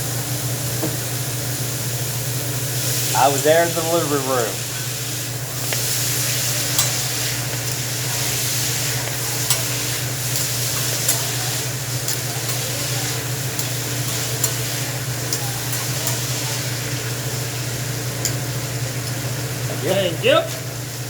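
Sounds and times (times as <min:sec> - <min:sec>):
food sizzling on a grill: 0:00.0 - 0:21.0
metal utensils clicking: 0:05.6 - 0:19.3.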